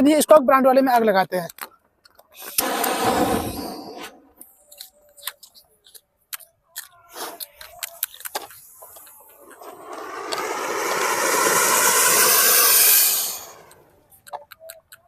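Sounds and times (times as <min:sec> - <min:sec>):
scrapes crackles and clicks: 0:01.4 - 0:10.8.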